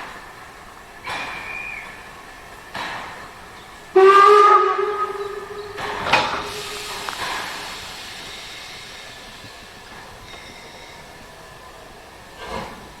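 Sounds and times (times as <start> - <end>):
steam burst and hiss: 0.0 - 13.0
steam locomotive whistle: 3.9 - 9.0.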